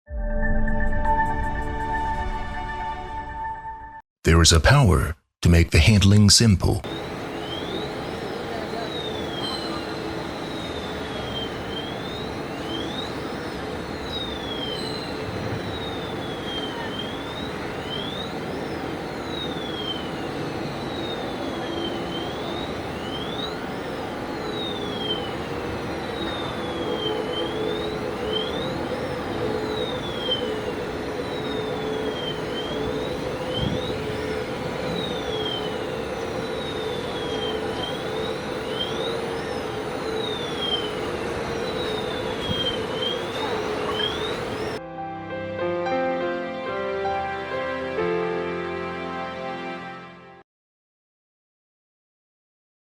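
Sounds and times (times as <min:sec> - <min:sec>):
electronic warning siren: 0:06.9 - 0:44.8.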